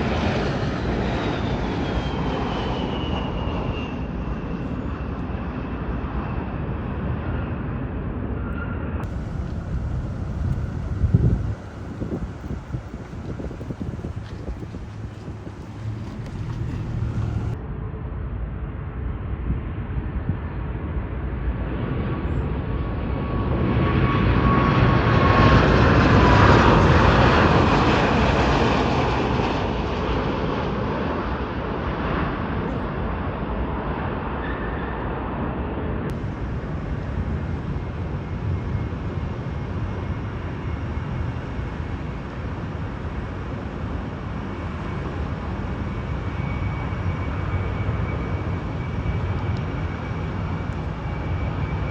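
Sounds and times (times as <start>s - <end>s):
airliner engine noise: 0.0s - 51.9s
engine whine dropping in pitch: 9.0s - 17.6s.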